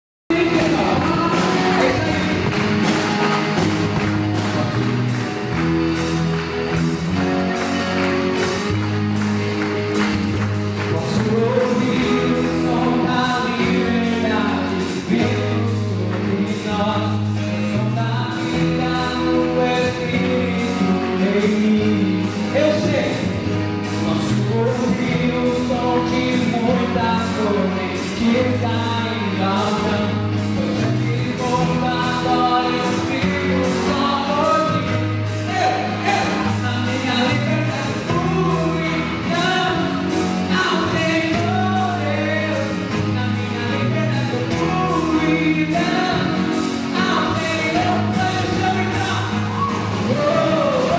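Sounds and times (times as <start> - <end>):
drum beat: 0.3 - 13.3
gospel band playing: 0.3 - 50.9.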